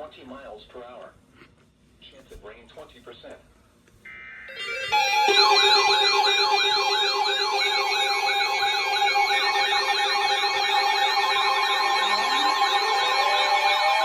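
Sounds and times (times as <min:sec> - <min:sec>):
electronic alert tone warbling: 0:04.1 - 0:14.0.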